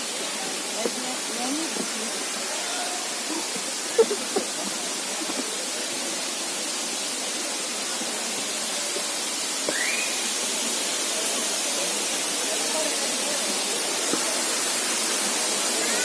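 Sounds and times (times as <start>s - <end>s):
falling water rushing: 0.0s - 16.0s.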